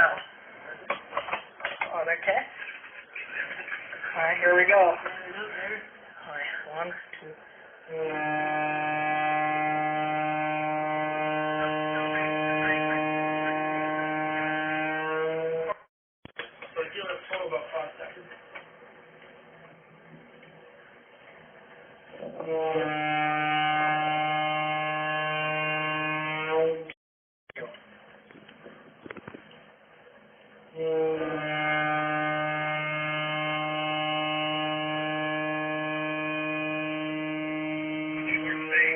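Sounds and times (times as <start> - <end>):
ship's whistle blast: 7.9 - 15.7, 22.4 - 26.6, 30.8 - 38.9.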